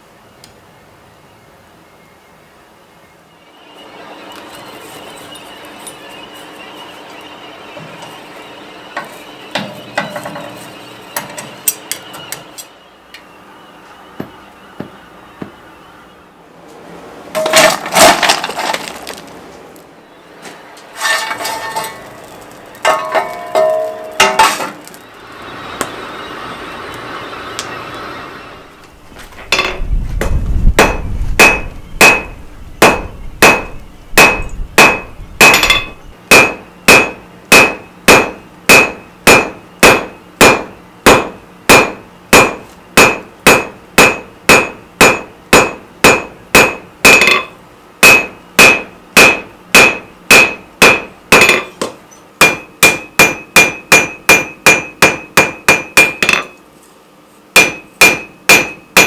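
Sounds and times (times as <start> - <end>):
hammer striking steel on anvil: 8.9 - 13.3, 21.0 - 25.0, 29.5 - 56.6, 57.5 - 59.0.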